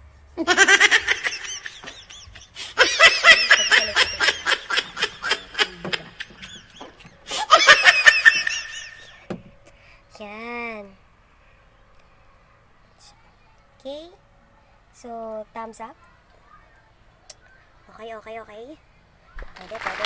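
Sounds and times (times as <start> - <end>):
person laughing: 0.4 - 9.1.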